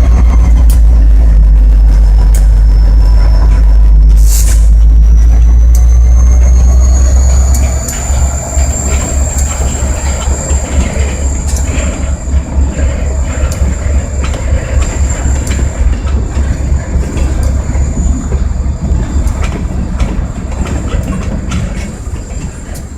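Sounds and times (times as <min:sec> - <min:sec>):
diesel locomotive engine rumble: 0:00.0 - 0:22.9
wheels clicking over rail joints: 0:07.2 - 0:22.9.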